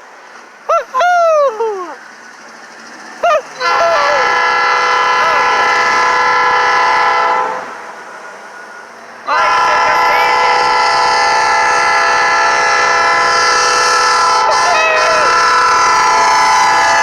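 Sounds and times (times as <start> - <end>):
locomotive air horn: 3.6 - 8.0, 9.3 - 17.0.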